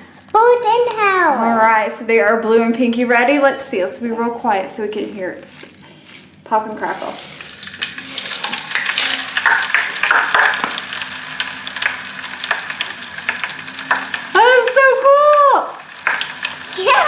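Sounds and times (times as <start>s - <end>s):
crystals crackling and popping in water: 7.0s - 17.0s.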